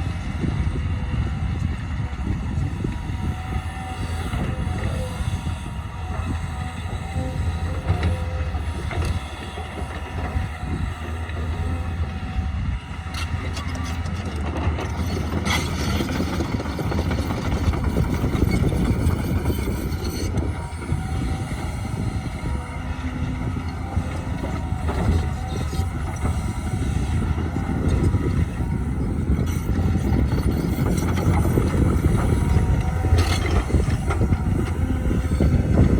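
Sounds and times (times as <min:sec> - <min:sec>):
construction machinery engine running: 0:00.0 - 0:35.9.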